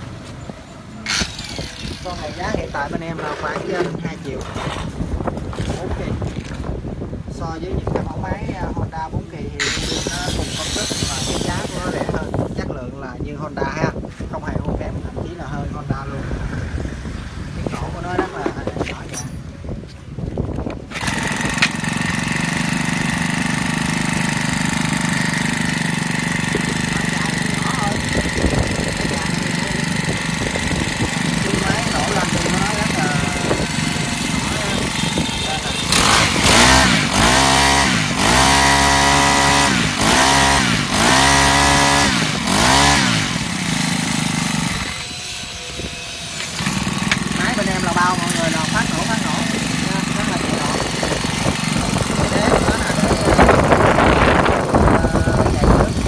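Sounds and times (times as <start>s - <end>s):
brush cutter engine idling: 1.0s - 5.0s, 9.6s - 12.6s, 20.8s - 56.0s.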